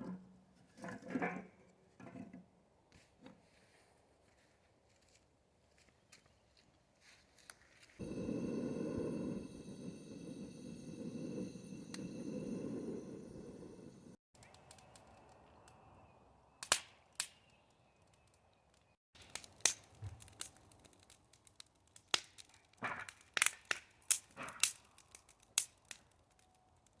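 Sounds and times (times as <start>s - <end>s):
wood fire crackling: 8.0s - 15.0s, 19.2s - 27.0s
sharp pops from fire: 16.6s - 17.6s, 19.2s - 26.6s.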